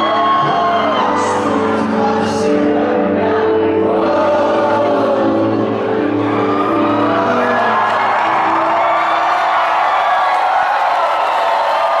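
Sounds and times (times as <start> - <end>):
audience cheering and whooping: 0.0 - 1.8, 6.0 - 12.0.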